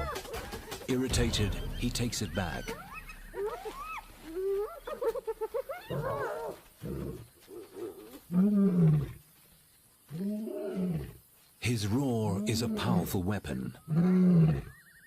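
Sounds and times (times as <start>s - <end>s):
hyenas squealing and giggling: 2.6s - 8.1s.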